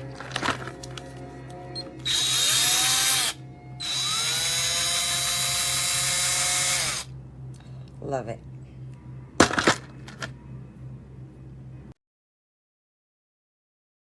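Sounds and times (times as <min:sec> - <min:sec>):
cordless drill motor whining: 0:01.7 - 0:07.1.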